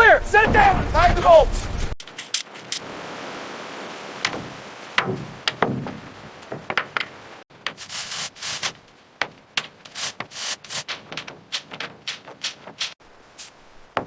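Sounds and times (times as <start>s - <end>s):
sharp knocks on wood: 4.2s - 7.8s
dull thuds: 4.2s - 13.0s
short scraping strokes on wood: 7.7s - 8.8s, 9.6s - 13.5s.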